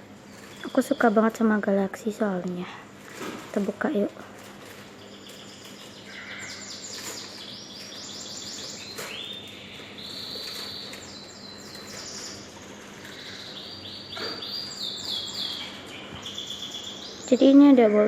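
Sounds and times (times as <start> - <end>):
songbird chirping and trilling: 0.1 - 2.6, 3.6 - 18.0.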